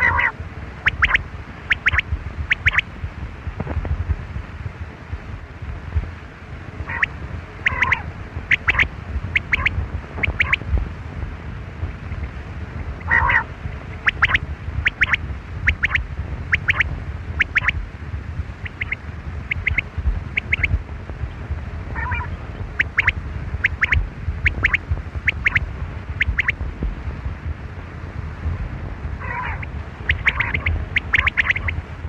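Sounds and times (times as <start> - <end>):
harsh rasping bird calls: 0.0 - 2.8, 6.9 - 10.6, 13.0 - 17.8, 18.6 - 20.8, 22.0 - 25.6, 26.2 - 26.6, 29.2 - 31.8
quail chirping: 0.0 - 2.8, 6.9 - 10.6, 13.0 - 17.8, 18.6 - 20.8, 22.0 - 25.6, 26.2 - 26.6, 29.2 - 31.8.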